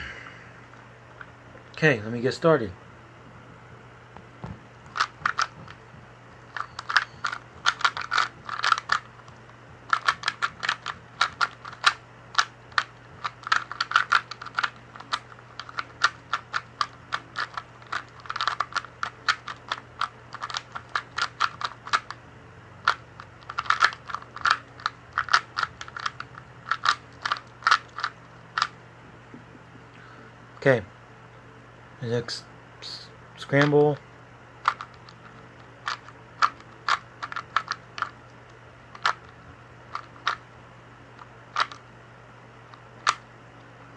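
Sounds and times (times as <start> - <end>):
faint low hum: 0.0 - 43.9
plastic cube clicking: 6.5 - 9.1, 9.9 - 22.2, 22.9 - 28.7.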